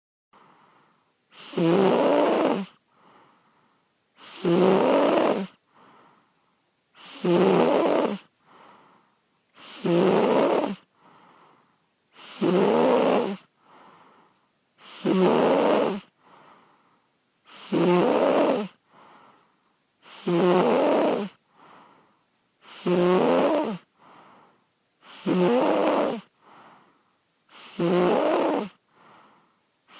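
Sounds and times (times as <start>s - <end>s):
faint breath out: 0.4s - 1.3s, 2.8s - 4.0s, 5.6s - 6.6s, 8.4s - 9.3s, 10.9s - 11.9s, 13.5s - 14.5s, 16.1s - 17.1s, 18.8s - 19.8s, 21.4s - 22.7s, 23.8s - 25.1s, 26.2s - 27.6s, 28.7s - 29.9s
person snoring loudly: 1.3s - 2.8s, 4.2s - 5.6s, 7.0s - 8.9s, 9.6s - 11.4s, 12.2s - 13.9s, 14.8s - 16.5s, 17.5s - 19.2s, 20.0s - 21.8s, 22.6s - 24.4s, 25.0s - 26.8s, 27.5s - 29.4s.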